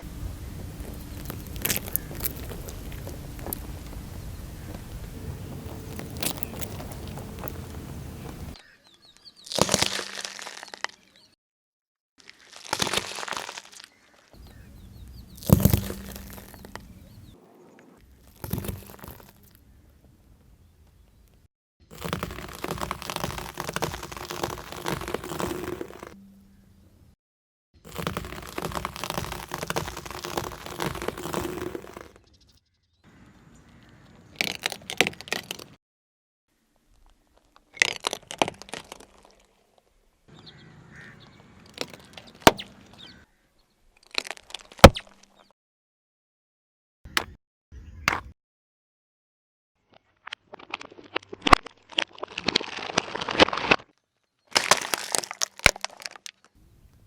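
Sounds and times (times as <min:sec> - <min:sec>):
objects crushed under car tyre: 0:00.0 - 0:08.6, 0:09.5 - 0:11.0, 0:12.2 - 0:14.1, 0:15.2 - 0:17.0, 0:18.2 - 0:19.6, 0:21.9 - 0:26.2, 0:27.9 - 0:32.2, 0:34.4 - 0:35.8, 0:37.4 - 0:39.5, 0:50.6 - 0:53.9, 0:54.5 - 0:56.6
sharp cracks and snaps: 0:00.7 - 0:08.6, 0:09.4 - 0:11.2, 0:12.2 - 0:14.4, 0:15.3 - 0:16.9, 0:21.3 - 0:26.2, 0:27.9 - 0:32.2, 0:34.3 - 0:35.8, 0:36.9 - 0:39.6, 0:41.6 - 0:43.1, 0:44.0 - 0:45.5, 0:49.9 - 0:56.6.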